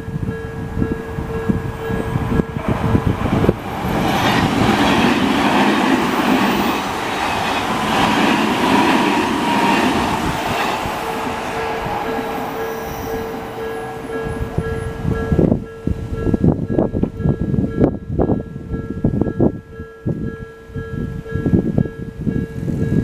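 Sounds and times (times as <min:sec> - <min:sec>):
train wheels clacking: 0:01.3 - 0:15.6.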